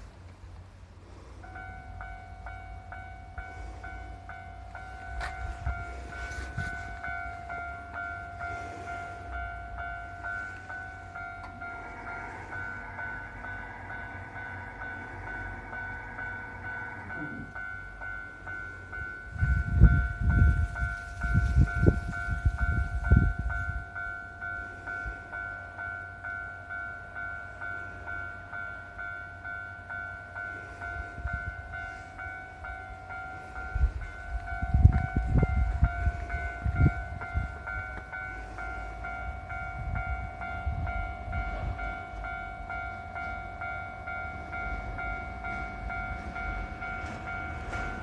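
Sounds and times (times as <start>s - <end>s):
passing train rumbling: 0.0s - 48.0s
level-crossing warning bell ringing: 1.0s - 48.0s
train wheels clunking over rail joints: 3.4s - 26.0s, 44.3s - 48.0s.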